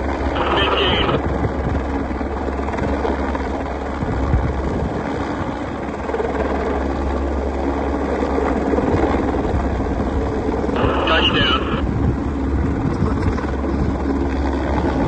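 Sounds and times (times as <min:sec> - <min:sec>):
helicopter rotor and engine: 0:00.0 - 0:15.0.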